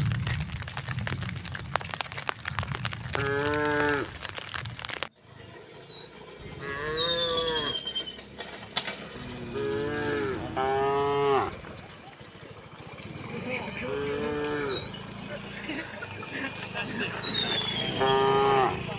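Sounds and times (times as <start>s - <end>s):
clicking and rumbling: 0.0s - 5.1s, 7.7s - 18.9s
cattle mooing: 3.1s - 4.1s, 6.6s - 7.8s, 9.2s - 11.6s, 13.6s - 14.9s, 17.9s - 18.9s
falling whistle: 6.6s - 8.2s, 17.0s - 18.4s
high chirps: 16.7s - 18.4s.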